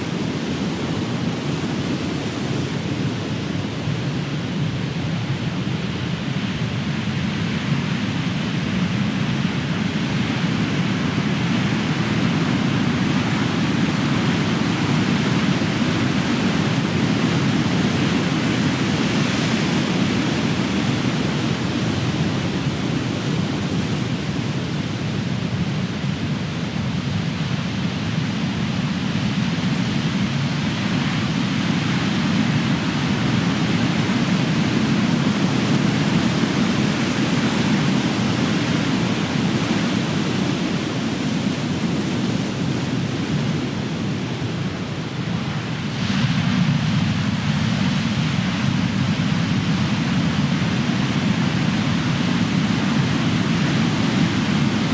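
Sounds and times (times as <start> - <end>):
ocean waves breaking: 32.2 - 49.2.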